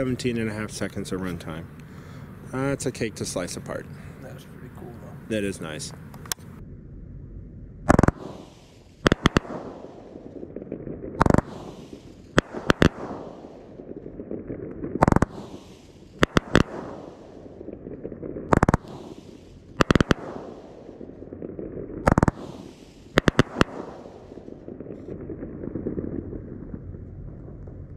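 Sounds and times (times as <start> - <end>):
firework launch thump: 7.8 - 13.4, 14.8 - 17.4, 18.5 - 20.6
firework shells bursting: 7.8 - 27.2
firework crackle and hiss: 7.9 - 27.9.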